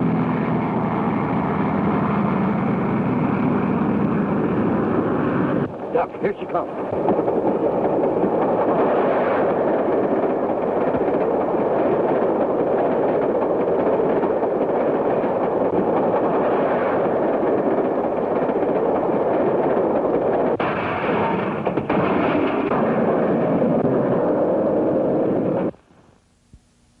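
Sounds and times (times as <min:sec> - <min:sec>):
steam train rumbling: 0:00.0 - 0:25.8.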